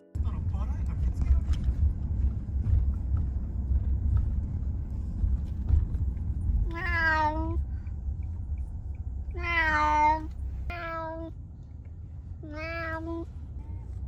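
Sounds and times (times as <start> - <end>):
steady low rumble: 0.1 - 14.0
cat meowing: 6.6 - 7.6, 9.3 - 11.3, 12.4 - 13.3.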